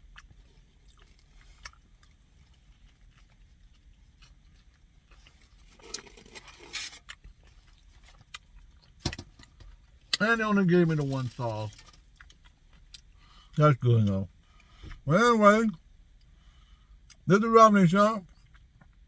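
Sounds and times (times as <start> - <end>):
person chewing food: 0.0 - 10.2, 11.0 - 13.6.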